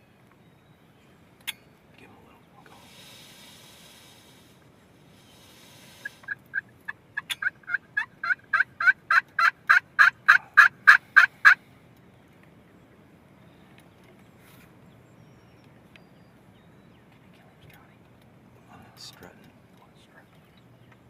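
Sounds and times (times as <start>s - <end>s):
turkey yelping: 6.0s - 11.6s.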